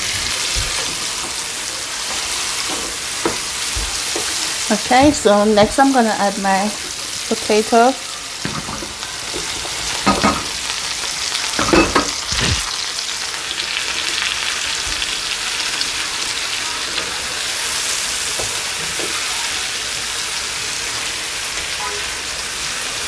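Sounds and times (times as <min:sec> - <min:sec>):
potatoes sizzling in a skillet: 0:00.0 - 0:23.0
knocks in a skillet: 0:10.0 - 0:10.6.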